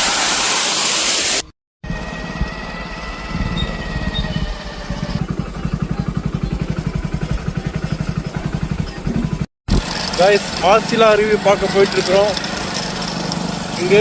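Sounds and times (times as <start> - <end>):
waterfall rushing: 0.0 - 1.5
motorcycle engine running: 1.8 - 14.0.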